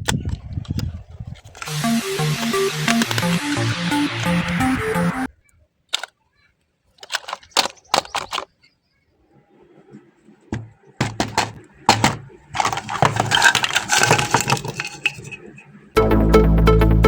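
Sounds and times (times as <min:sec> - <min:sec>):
sharp clicks and knocks: 0:01.6 - 0:05.3.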